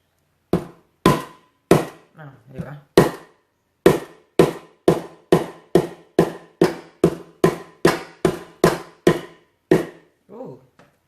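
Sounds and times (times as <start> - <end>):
knife pounding on chopping board: 0.6 - 2.0, 3.0 - 10.0.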